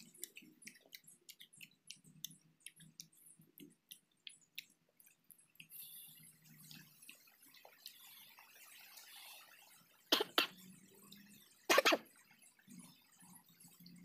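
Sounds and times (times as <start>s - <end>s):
wet chewing of fruit: 0.0s - 9.3s
mouth clicks: 10.1s - 10.5s, 11.7s - 12.0s.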